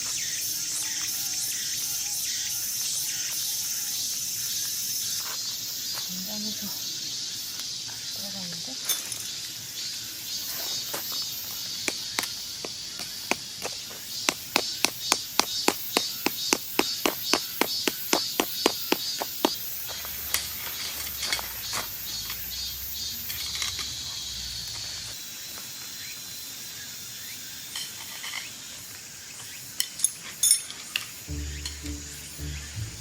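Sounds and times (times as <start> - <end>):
high insect drone: 0.0 - 30.0, 30.9 - 33.0
rapid knocks: 14.3 - 19.6.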